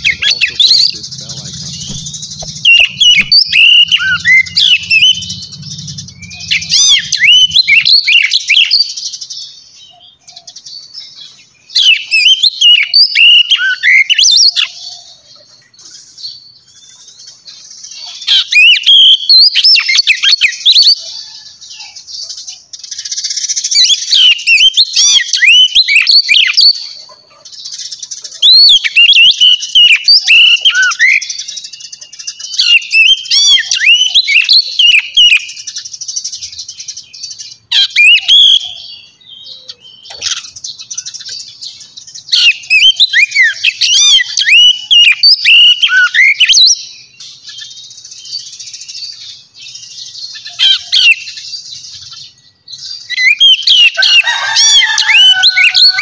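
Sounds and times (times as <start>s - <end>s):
buzzy bird trilling: 0.0s - 8.8s
songbird chirping and warbling: 0.0s - 56.0s.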